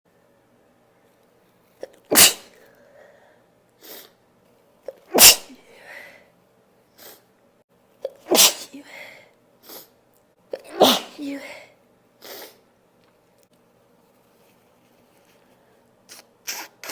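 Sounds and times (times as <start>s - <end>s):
person sneezing: 1.8s - 2.7s, 4.9s - 5.7s, 8.0s - 9.9s, 10.5s - 12.6s, 16.1s - 16.9s
soft breaths: 2.5s - 4.2s, 5.6s - 7.3s.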